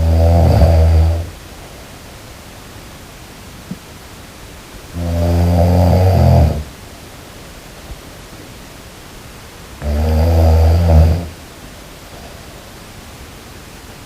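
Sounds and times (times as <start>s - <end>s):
person snoring loudly: 0.0s - 1.4s, 4.9s - 6.7s, 9.8s - 11.4s
steady background hiss: 0.0s - 14.0s.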